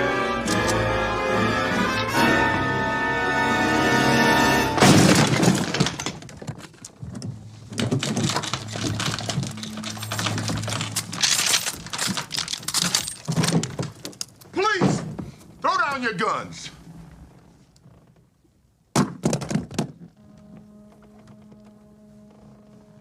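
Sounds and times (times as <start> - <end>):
orchestral brass music: 0.0 - 5.0, 20.2 - 23.0
loud crash of breaking: 4.8 - 6.7
knocks and thuds: 4.8 - 15.4, 18.9 - 20.1.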